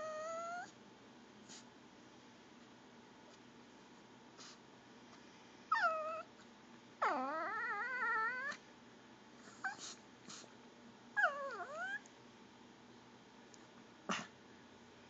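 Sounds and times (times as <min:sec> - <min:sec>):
dog whining: 0:00.0 - 0:00.8, 0:05.7 - 0:06.4, 0:07.0 - 0:08.6, 0:09.4 - 0:10.4, 0:11.2 - 0:12.1
dog chirp: 0:11.2 - 0:12.0.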